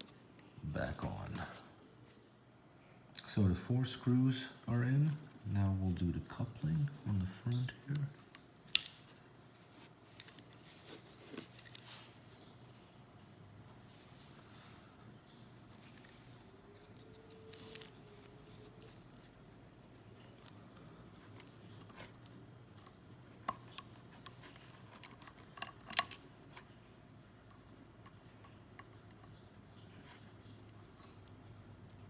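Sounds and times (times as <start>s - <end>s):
small tools and parts clicking: 21.4s - 26.6s.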